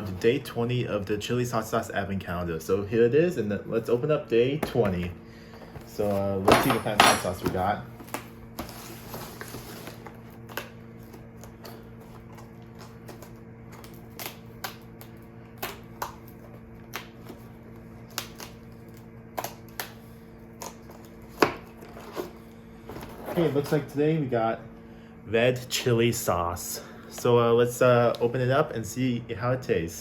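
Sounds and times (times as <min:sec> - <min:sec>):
steady low hum: 0:00.0 - 0:30.0
cardboard packaging rustling: 0:07.3 - 0:14.2.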